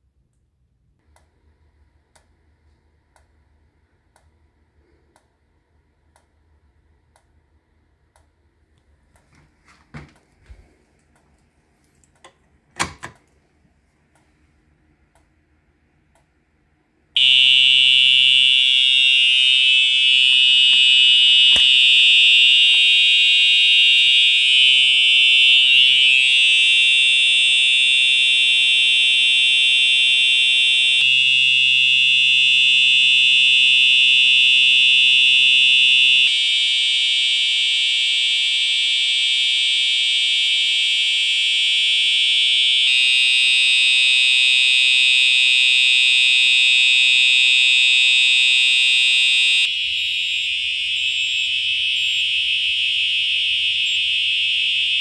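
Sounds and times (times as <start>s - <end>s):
buzzy fire alarm tone: 17.2s - 55.0s.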